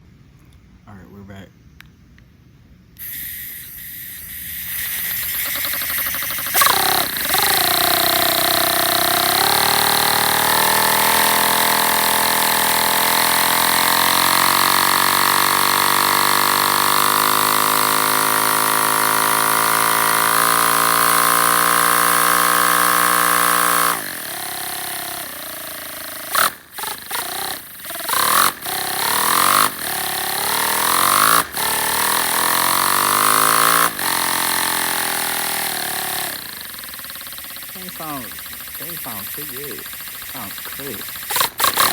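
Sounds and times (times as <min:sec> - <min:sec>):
air engine buzzing: 0:03.0 - 0:16.0, 0:23.9 - 0:41.9.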